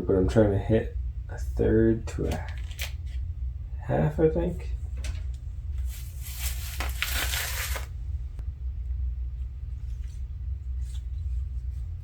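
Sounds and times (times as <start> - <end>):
duct tape crinkling: 2.2 - 3.2, 5.8 - 8.0.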